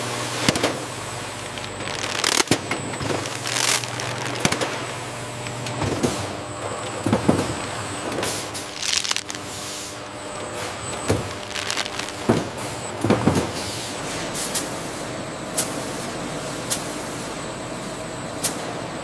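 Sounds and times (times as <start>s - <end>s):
factory machinery hiss: 7.4s - 11.5s, 12.1s - 18.8s.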